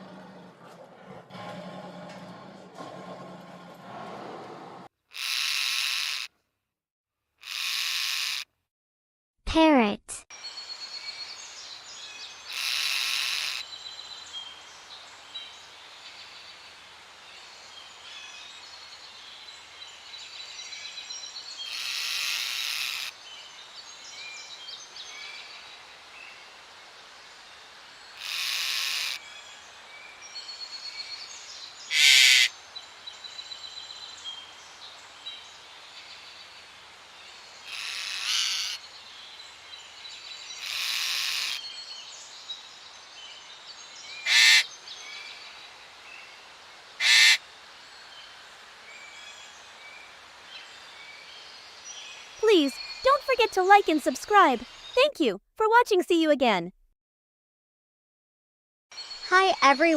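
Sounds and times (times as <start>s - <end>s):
parrot squawking: 7.4s - 8.4s, 12.5s - 13.6s, 21.7s - 23.1s, 31.9s - 32.5s, 37.7s - 38.8s, 40.6s - 41.6s, 44.3s - 44.7s, 47.0s - 47.4s
small birds chirping: 49.0s - 56.6s.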